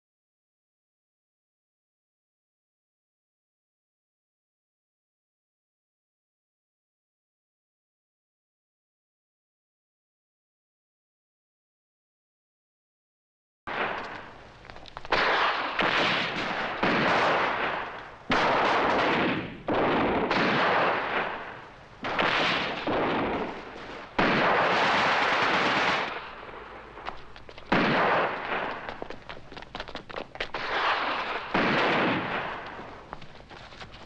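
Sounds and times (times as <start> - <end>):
gunfire and explosions: 13.7 - 34.0.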